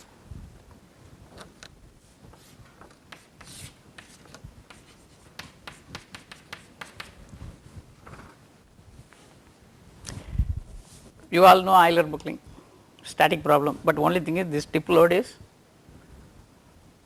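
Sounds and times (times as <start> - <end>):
pen or chalk scratching: 2.4 - 7.2.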